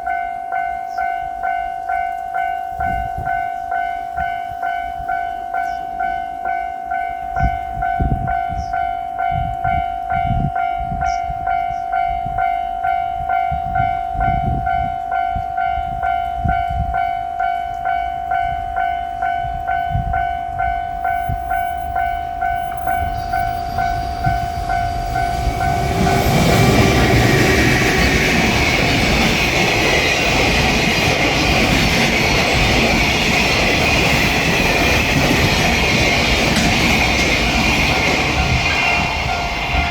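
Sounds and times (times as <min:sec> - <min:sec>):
level-crossing bell ringing: 0:00.0 - 0:39.9
freight train rumbling past: 0:12.0 - 0:39.9.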